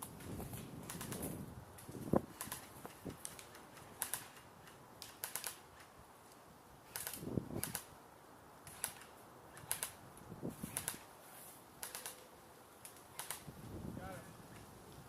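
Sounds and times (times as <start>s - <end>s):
airsoft guns firing: 2.3s - 5.7s, 8.7s - 10.0s.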